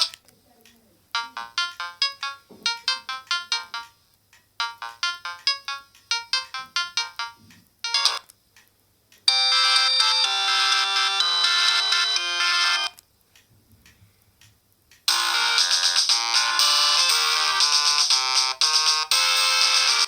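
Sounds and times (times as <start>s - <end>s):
ringtone tune with held chords: 1.2s - 8.3s, 9.3s - 13.0s, 15.1s - 20.0s
bell-like phone ringtone: 4.6s - 8.2s, 9.3s - 13.0s, 15.1s - 20.0s.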